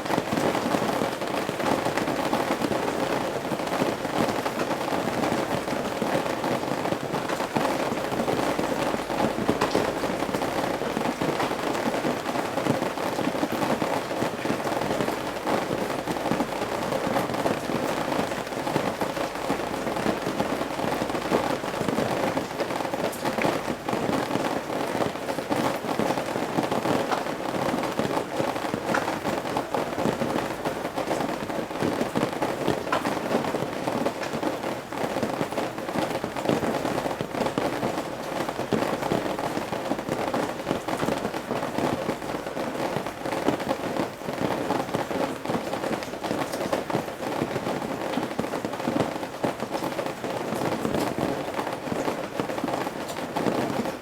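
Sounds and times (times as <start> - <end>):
rain dripping from roof eaves: 0.0 - 54.0.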